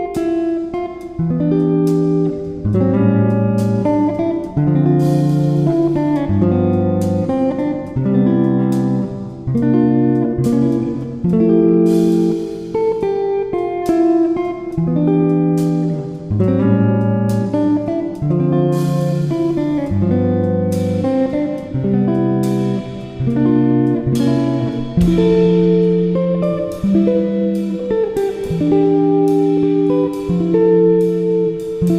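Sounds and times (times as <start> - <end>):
guitar music: 0.0 - 31.9.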